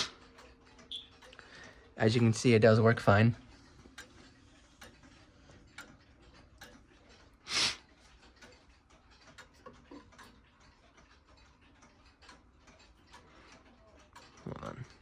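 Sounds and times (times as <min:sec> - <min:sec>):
clock ticking: 0:00.0 - 0:15.0.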